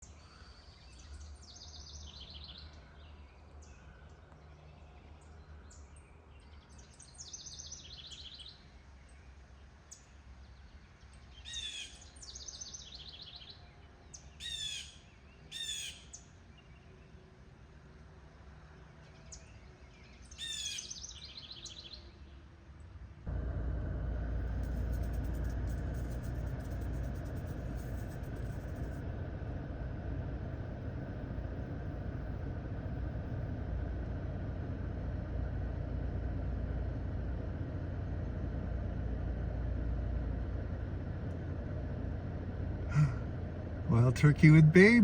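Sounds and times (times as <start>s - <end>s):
faint low steady hum: 22.4s - 45.0s.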